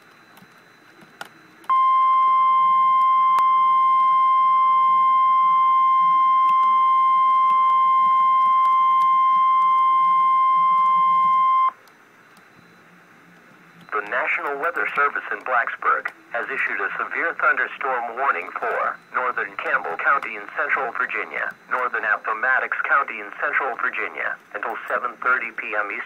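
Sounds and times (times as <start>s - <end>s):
steady alarm beep: 1.7s - 11.8s.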